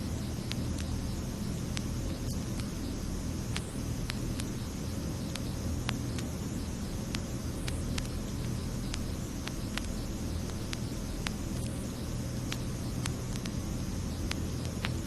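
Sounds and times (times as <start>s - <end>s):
sharp clicks: 0.4s - 1.0s, 5.2s - 6.4s, 7.0s - 11.8s, 12.4s - 13.6s.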